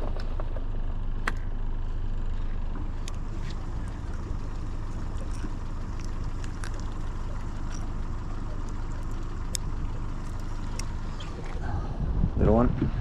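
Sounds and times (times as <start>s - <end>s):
wind buffeting microphone: 11.2s - 13.0s.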